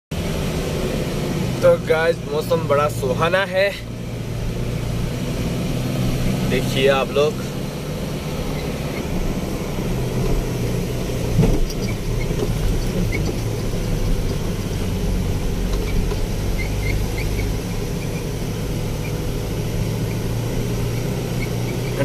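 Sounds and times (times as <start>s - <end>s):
truck engine running: 0.1s - 22.0s.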